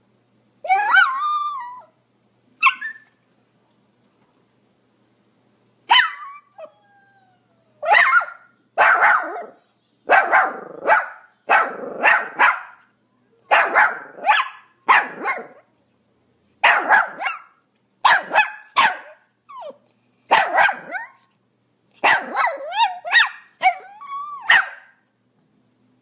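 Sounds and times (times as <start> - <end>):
dog yelping: 0.7 - 1.9, 2.6 - 3.6, 5.9 - 6.8, 7.7 - 12.8, 16.7 - 17.5, 18.1 - 21.3, 22.0 - 24.9
small dog barking: 5.9 - 6.4, 7.8 - 12.9, 13.5 - 15.7, 16.6 - 21.2, 22.0 - 25.0.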